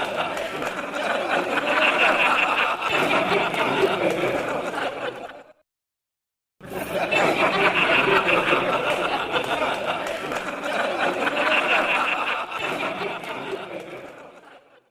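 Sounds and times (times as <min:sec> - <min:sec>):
people chattering: 0:00.0 - 0:05.5, 0:06.6 - 0:14.6
group of people laughing: 0:00.0 - 0:05.7, 0:06.6 - 0:14.9.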